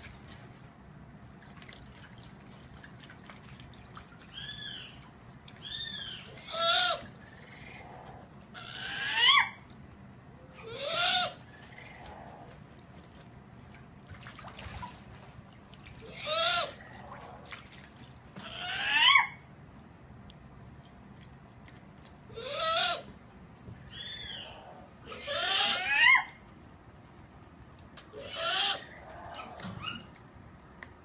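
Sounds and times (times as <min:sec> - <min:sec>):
bird calling: 0:04.2 - 0:09.6, 0:10.4 - 0:12.6, 0:22.3 - 0:23.1, 0:23.8 - 0:26.4, 0:28.2 - 0:30.2.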